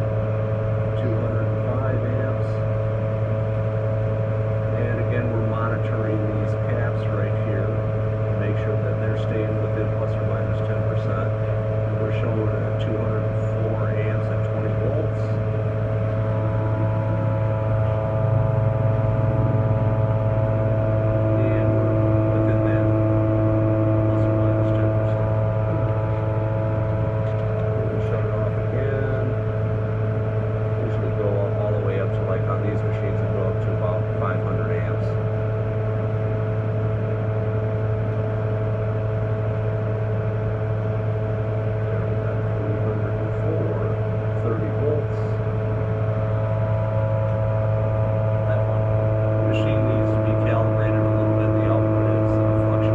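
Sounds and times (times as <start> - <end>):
steady whir: 0.0 - 52.9
welder electrical hum: 0.0 - 52.9
high steady tones: 9.2 - 34.2.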